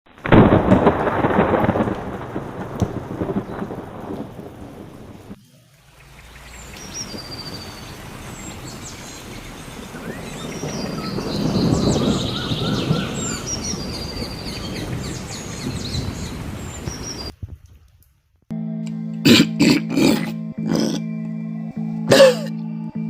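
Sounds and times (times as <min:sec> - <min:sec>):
thunderclap rumbling: 0:00.1 - 0:05.4, 0:06.6 - 0:17.8
rain: 0:00.1 - 0:18.4
high bird chirps: 0:06.0 - 0:17.3.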